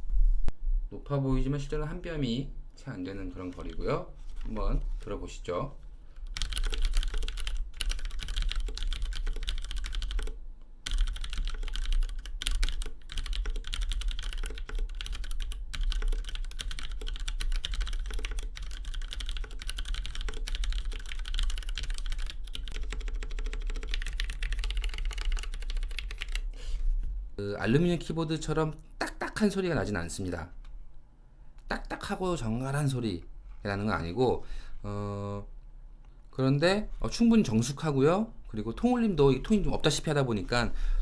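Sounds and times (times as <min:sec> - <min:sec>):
fast keyboard typing: 0:06.2 - 0:26.5.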